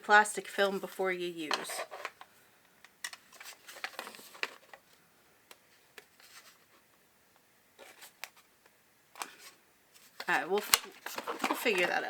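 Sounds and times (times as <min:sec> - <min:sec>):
handling rustles: 0:00.6 - 0:02.3, 0:03.0 - 0:05.0, 0:05.7 - 0:06.8, 0:07.8 - 0:08.4, 0:09.2 - 0:12.0
fingernails scratching plastic: 0:10.3 - 0:12.0.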